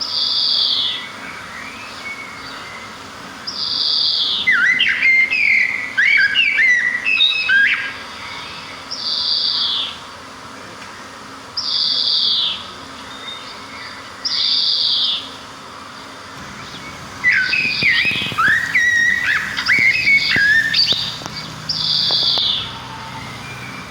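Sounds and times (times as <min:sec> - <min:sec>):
songbird warbling: 0:00.0 - 0:10.0, 0:16.3 - 0:23.9
bird falling notes: 0:16.4 - 0:23.9.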